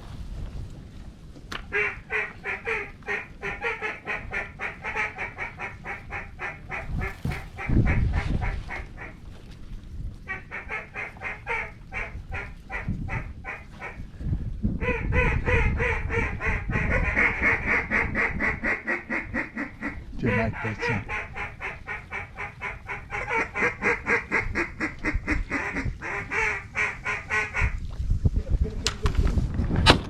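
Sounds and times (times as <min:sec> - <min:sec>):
wind rumble on microphone: 0:00.0 - 0:30.0
duck calls quacking: 0:01.7 - 0:09.2, 0:10.3 - 0:14.0, 0:14.8 - 0:27.8.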